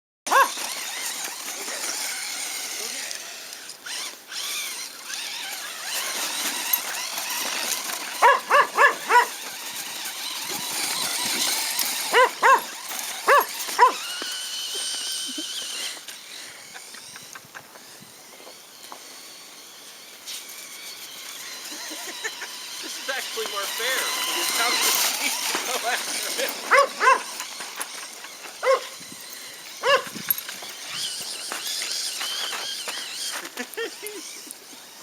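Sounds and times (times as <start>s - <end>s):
dog barking: 0.3s - 0.6s, 8.2s - 9.4s, 12.1s - 12.7s, 13.3s - 14.0s, 26.7s - 27.3s, 28.6s - 28.9s, 29.8s - 30.1s
electric toy truck running: 0.3s - 35.0s.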